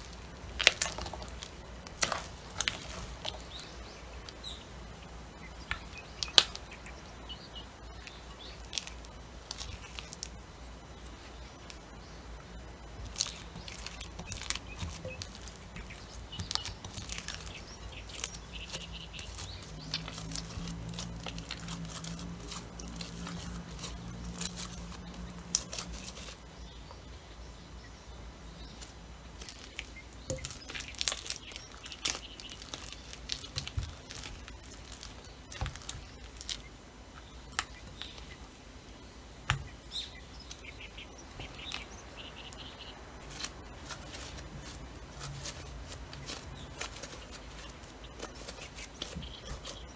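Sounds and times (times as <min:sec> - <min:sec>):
dough being stirred in a bowl: 0:00.0 - 0:03.8, 0:12.8 - 0:26.6, 0:28.9 - 0:36.6, 0:43.2 - 0:49.9
faint steady hum: 0:00.0 - 0:49.9.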